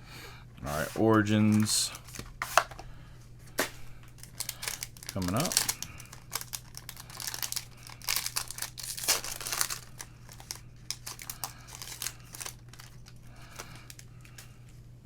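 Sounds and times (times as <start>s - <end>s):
wrapper crinkling and tearing: 4.1s - 14.5s.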